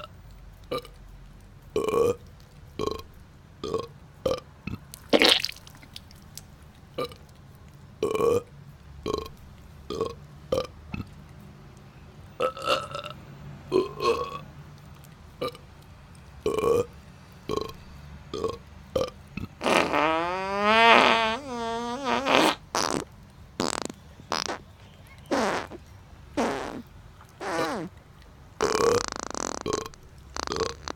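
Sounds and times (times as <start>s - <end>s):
person burping: 4.7s - 5.6s.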